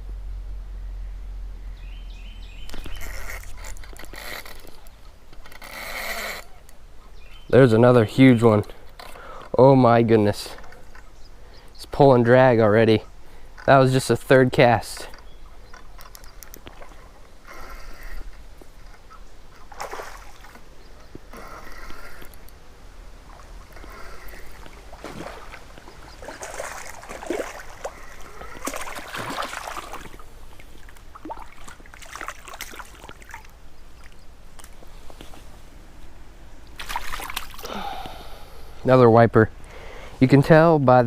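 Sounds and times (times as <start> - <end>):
running river water: 2.3 - 39.3
water splashing: 19.6 - 20.6, 23.2 - 34.8, 36.7 - 37.9.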